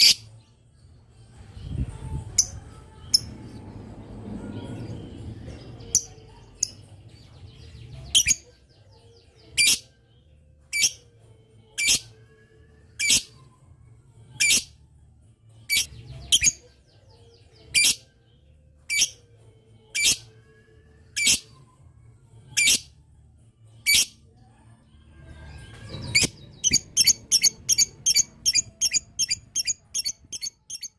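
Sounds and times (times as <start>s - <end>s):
lovebird chirping: 9.4s - 9.8s, 26.0s - 30.9s.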